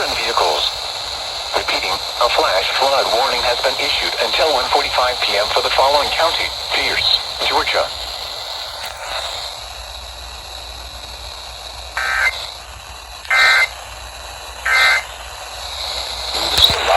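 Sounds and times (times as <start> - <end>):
radio static hiss: 0.0 - 16.9.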